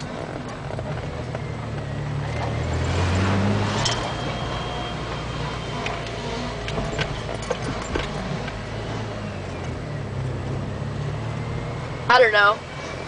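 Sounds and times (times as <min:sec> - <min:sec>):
wheel rubbing ticks and squeaks: 0:00.0 - 0:03.0, 0:03.7 - 0:09.8
engine and road hum: 0:00.0 - 0:13.0.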